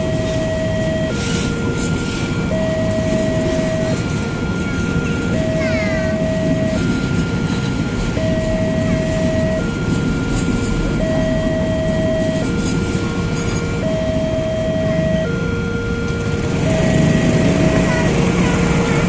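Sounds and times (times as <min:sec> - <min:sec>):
level crossing two-tone alarm: 0:00.0 - 0:19.0
low rumble of passing train: 0:00.0 - 0:19.0.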